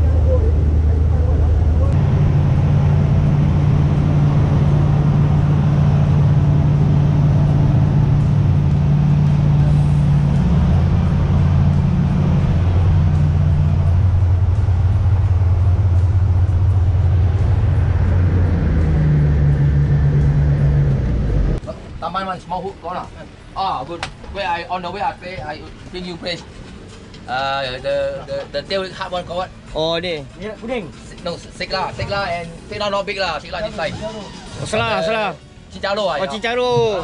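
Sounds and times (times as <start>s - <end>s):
boat engine droning: 0.0s - 22.0s
rushing noise: 0.8s - 21.7s.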